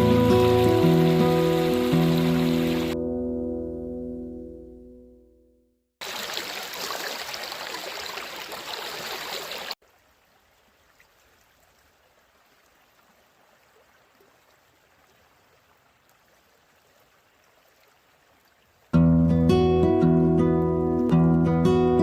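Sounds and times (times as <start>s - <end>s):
river rapids rushing: 0.0s - 3.0s.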